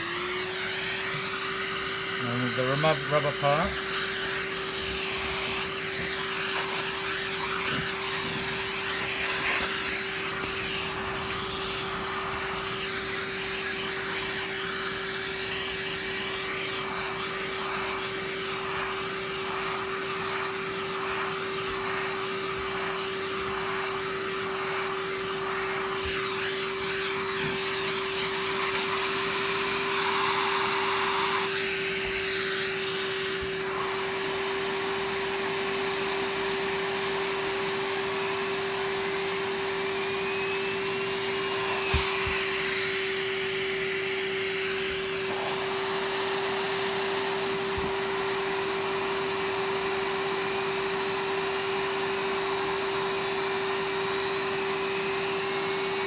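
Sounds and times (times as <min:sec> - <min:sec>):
small electric motor whining: 0:00.0 - 0:35.8.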